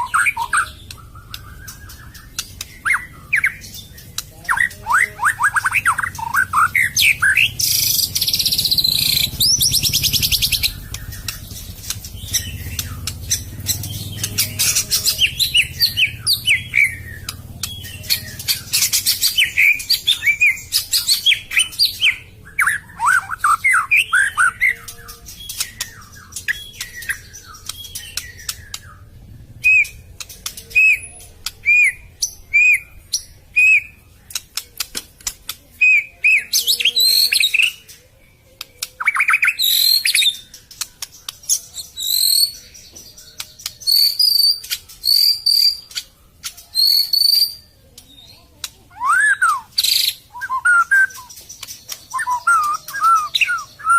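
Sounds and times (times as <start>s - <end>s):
bird singing whistled song: 0.0s - 34.0s, 35.8s - 53.9s
bird sharp clicking notes: 0.2s - 4.3s, 5.8s - 20.2s.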